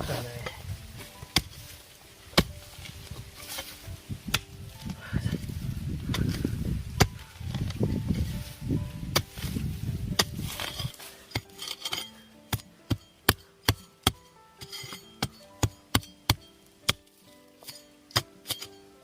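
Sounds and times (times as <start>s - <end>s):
hoe chopping hard soil: 0.0s - 19.0s
soft background music: 0.0s - 19.0s
low rumble: 2.4s - 11.0s.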